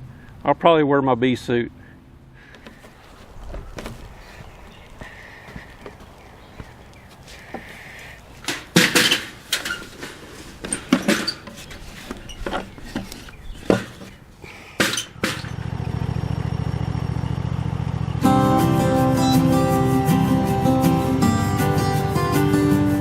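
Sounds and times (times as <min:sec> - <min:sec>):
scuffing: 0:02.4 - 0:14.3
wooden boards knocking and thudding: 0:08.5 - 0:14.2, 0:14.8 - 0:15.6.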